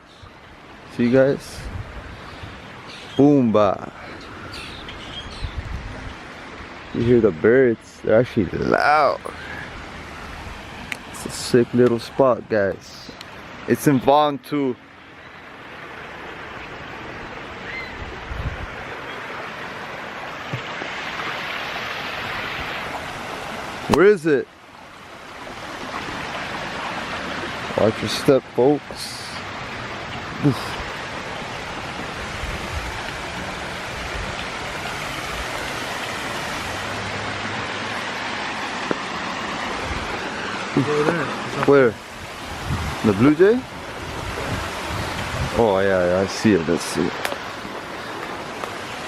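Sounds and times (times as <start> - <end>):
stream water flowing: 0.0 - 49.0
bird chirp: 2.8 - 3.5, 4.1 - 5.7, 17.6 - 18.0.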